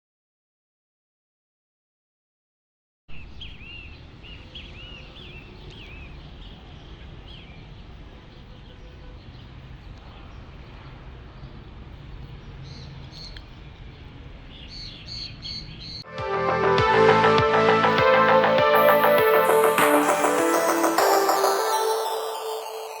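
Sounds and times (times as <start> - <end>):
small birds chirping: 3.1 - 16.0.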